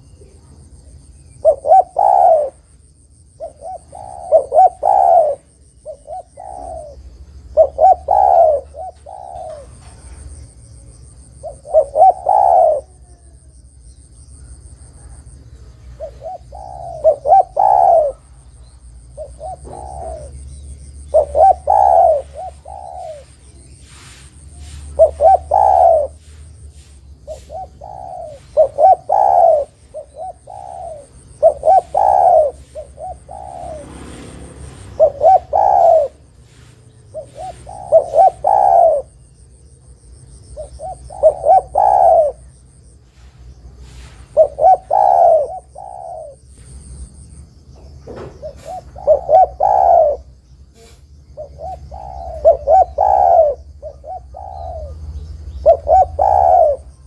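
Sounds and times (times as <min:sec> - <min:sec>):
dove cooing: 0:00.0 - 0:13.7, 0:14.4 - 0:47.2, 0:47.8 - 0:57.0.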